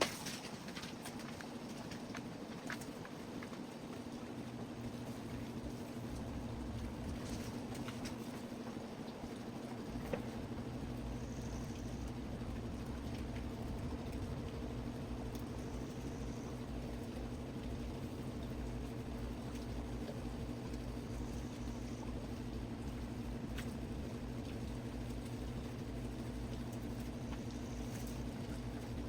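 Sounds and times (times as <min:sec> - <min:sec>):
low mechanical hum: 0:00.0 - 0:29.0.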